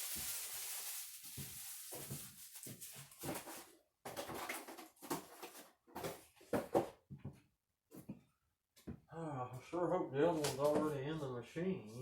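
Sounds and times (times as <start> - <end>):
packaging rustling: 0.0 - 5.6.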